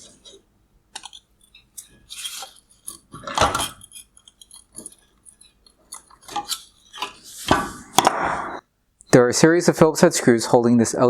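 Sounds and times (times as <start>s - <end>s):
hard plastic parts clicking: 0.9s - 8.2s.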